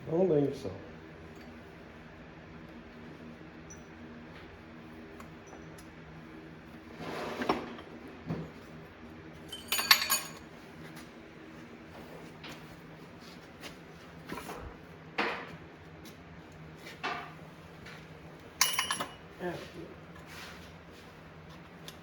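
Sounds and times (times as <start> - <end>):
metal parts clinking: 9.5 - 10.4, 18.6 - 19.2.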